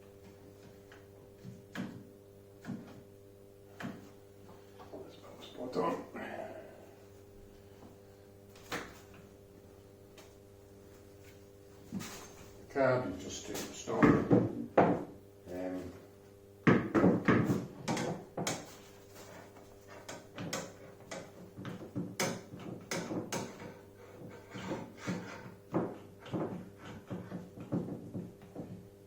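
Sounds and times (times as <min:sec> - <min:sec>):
faint steady hum: 0:00.0 - 0:29.0
clamps knocking and clicking: 0:16.7 - 0:18.7, 0:20.0 - 0:28.8.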